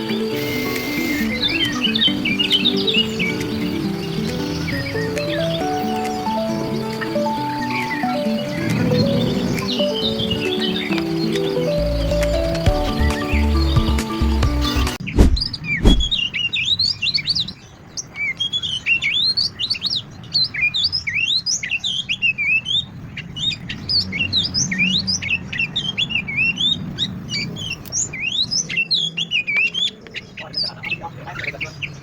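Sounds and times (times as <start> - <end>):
small birds chirping: 0.0 - 32.0
sharp knock: 15.2 - 16.1.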